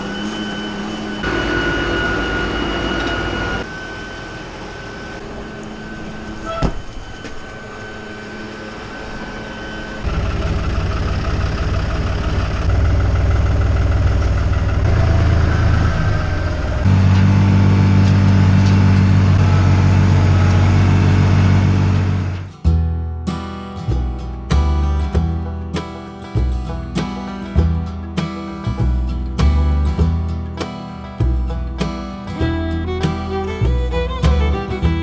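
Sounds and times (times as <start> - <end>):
diesel tractor engine running: 10.0 - 35.0.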